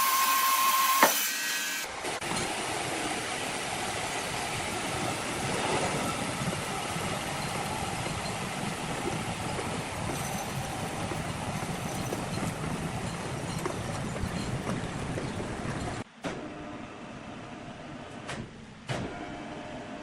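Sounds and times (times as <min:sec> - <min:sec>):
sawmill machinery drone: 0:00.0 - 0:18.2.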